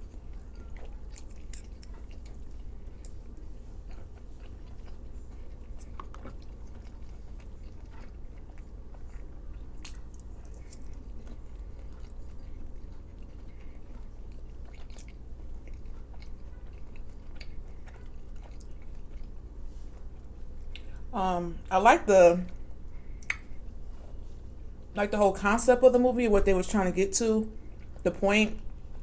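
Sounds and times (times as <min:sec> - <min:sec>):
person chewing food: 0:00.0 - 0:21.1
steady low hum: 0:00.0 - 0:29.0
wet mouth clicks: 0:23.2 - 0:23.5.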